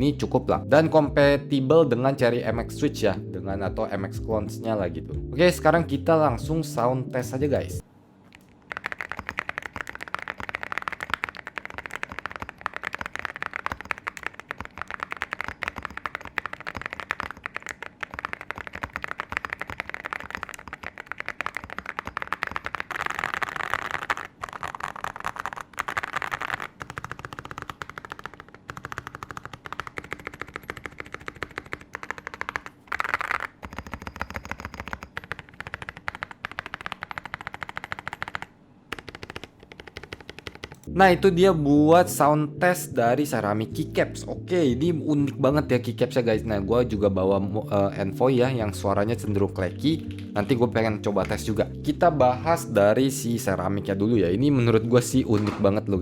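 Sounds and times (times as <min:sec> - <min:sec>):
mechanical keyboard typing: 0:08.3 - 0:40.9, 0:48.0 - 0:51.7.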